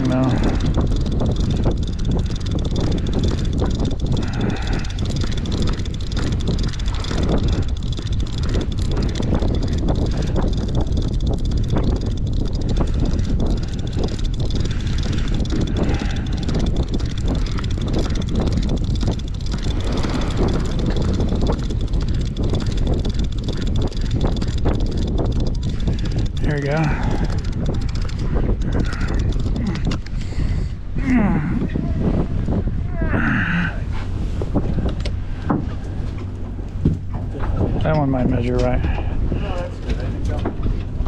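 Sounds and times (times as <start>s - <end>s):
boat engine rumbling: 0.0s - 41.0s
wind: 0.0s - 41.0s.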